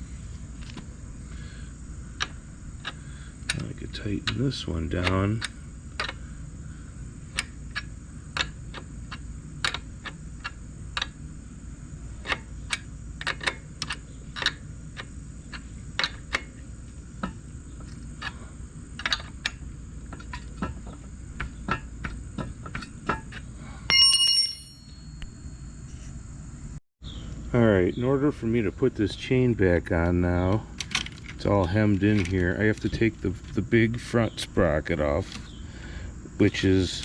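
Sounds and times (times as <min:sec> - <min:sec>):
wrench clicking on bolt: 0:02.2 - 0:06.2, 0:07.3 - 0:11.2, 0:12.2 - 0:16.5
ringing metal clink: 0:23.9 - 0:25.9.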